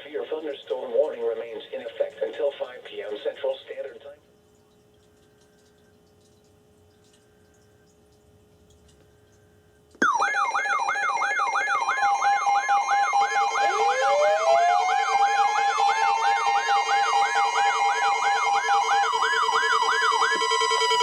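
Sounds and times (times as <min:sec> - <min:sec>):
electronic siren yelping: 0:10.0 - 0:21.0
siren winding up in pitch: 0:10.0 - 0:21.0.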